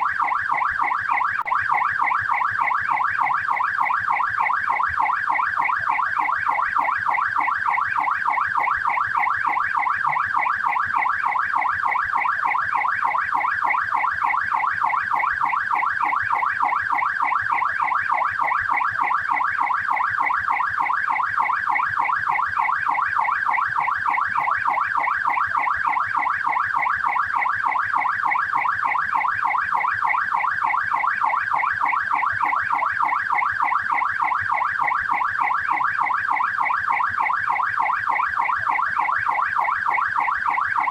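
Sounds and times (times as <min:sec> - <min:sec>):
police siren yelping: 0:29.4 - 0:40.9.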